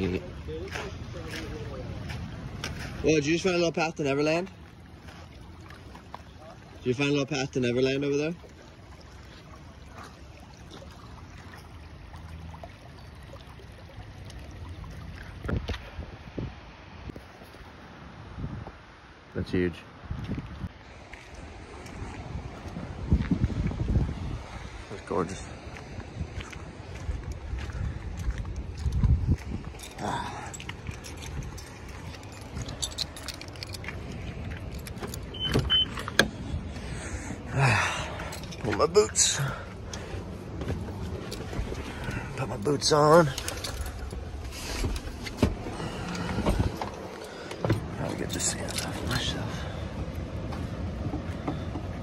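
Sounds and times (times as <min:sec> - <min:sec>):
wind rumble on microphone: 0:14.6 - 0:17.3, 0:18.0 - 0:18.9, 0:20.0 - 0:37.6, 0:39.4 - 0:52.0
keys jangling: 0:29.8 - 0:35.4
short high beeps: 0:35.3 - 0:36.0.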